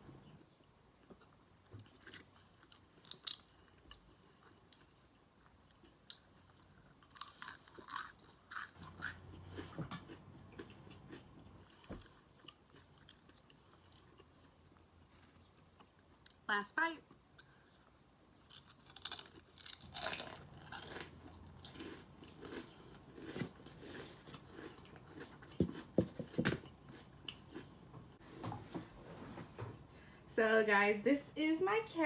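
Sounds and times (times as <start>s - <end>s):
person chewing and biting food: 1.0s - 16.4s, 18.4s - 27.8s
crisp crunches: 18.5s - 21.1s.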